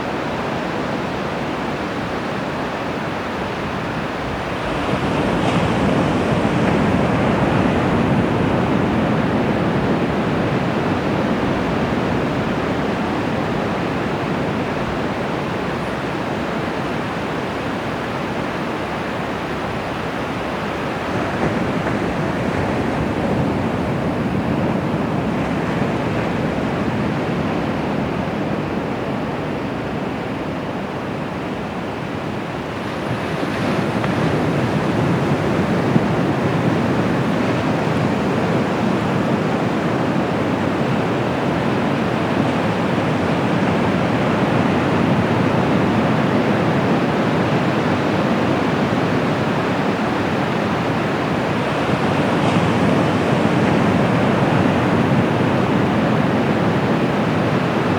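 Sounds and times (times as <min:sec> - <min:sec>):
waves breaking on beach: 0:00.6 - 0:57.9.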